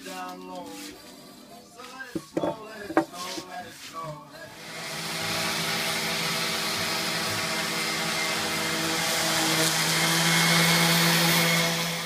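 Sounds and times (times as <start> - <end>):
electric motor hissing and humming: 4.6 - 12.0.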